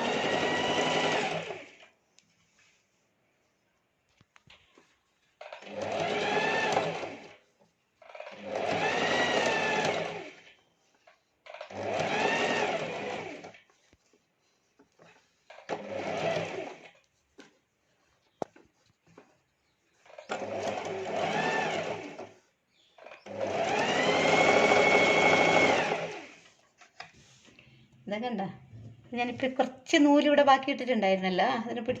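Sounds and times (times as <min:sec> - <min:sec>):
sewing machine motor whine: 0:00.0 - 0:01.9, 0:05.4 - 0:07.4, 0:08.0 - 0:10.6, 0:11.4 - 0:13.6, 0:15.7 - 0:17.0, 0:20.1 - 0:22.4, 0:23.0 - 0:26.5.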